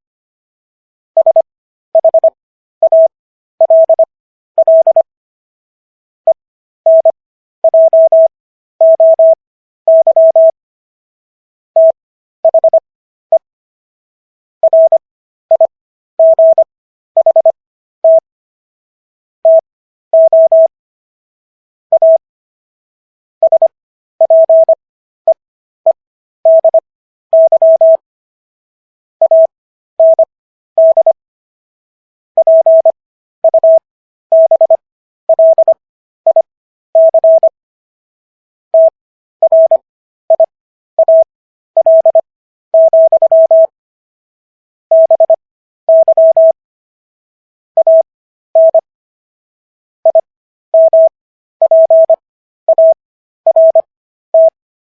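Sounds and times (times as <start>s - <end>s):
morse code beeps: 1.2s - 5.1s, 6.9s - 10.6s, 11.8s - 13.5s, 14.6s - 18.2s, 19.4s - 19.6s, 20.2s - 20.7s, 21.9s - 22.2s, 23.4s - 24.8s, 25.9s - 28.0s, 29.2s - 31.2s, 32.4s - 37.6s, 38.8s - 43.8s, 44.9s - 46.6s, 47.8s - 48.9s, 50.0s - 54.6s.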